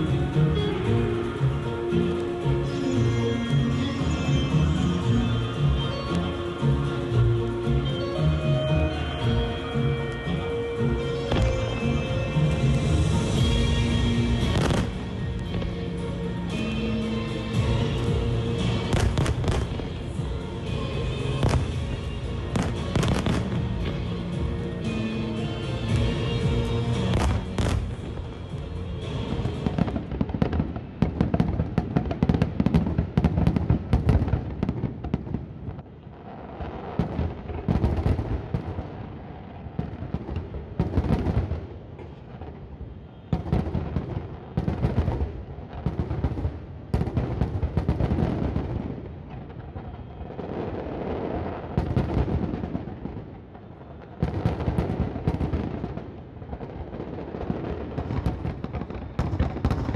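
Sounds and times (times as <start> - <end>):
fireworks bangs and crackles: 0.0 - 59.9.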